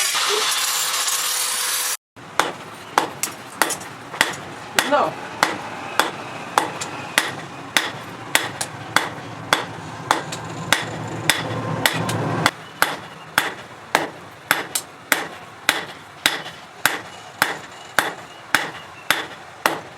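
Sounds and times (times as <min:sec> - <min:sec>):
hammer beating metal: 0:02.3 - 0:19.9.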